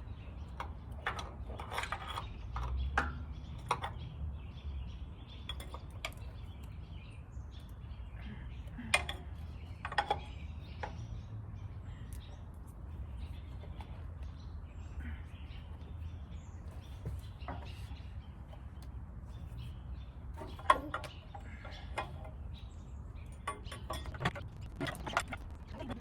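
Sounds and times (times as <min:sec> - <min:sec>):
birds chirping: 0:00.0 - 0:26.0
low steady hum: 0:11.6 - 0:26.0
metal clinks and knocks: 0:23.2 - 0:25.6.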